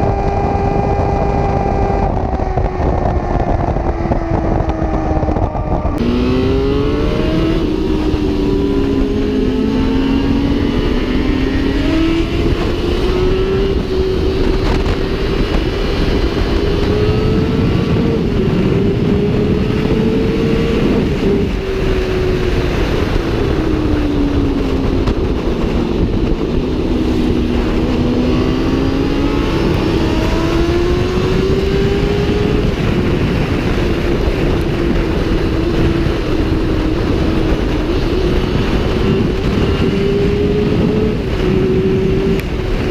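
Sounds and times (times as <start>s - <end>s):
motorcycle engines at speed: 0.0s - 42.9s
wind rush: 0.0s - 42.9s.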